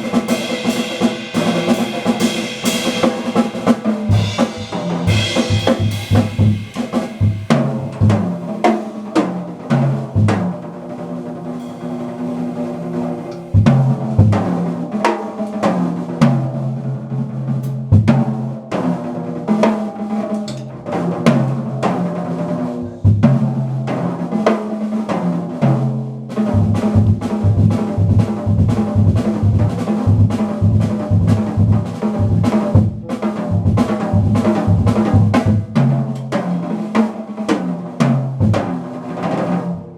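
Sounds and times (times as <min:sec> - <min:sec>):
drum kit: 0:00.0 - 0:39.9
jazz band playing: 0:00.0 - 0:39.9
bass line: 0:01.3 - 0:08.6.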